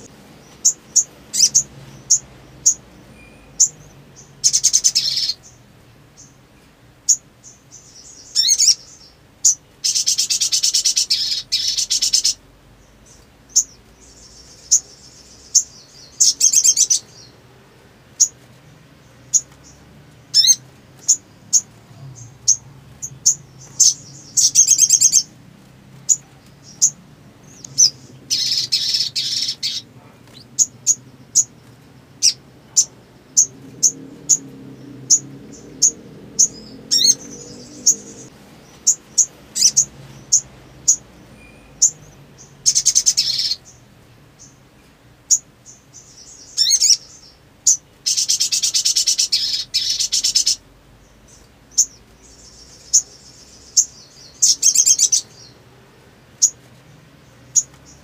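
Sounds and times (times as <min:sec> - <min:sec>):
songbird calling high sharp chips: 0:00.0 - 0:05.6, 0:07.1 - 0:12.4, 0:13.0 - 0:17.3, 0:19.2 - 0:25.3, 0:26.0 - 0:34.5, 0:35.1 - 0:43.8, 0:45.3 - 0:50.6, 0:51.3 - 0:55.6
songbird trilled bursts: 0:26.1 - 0:29.8.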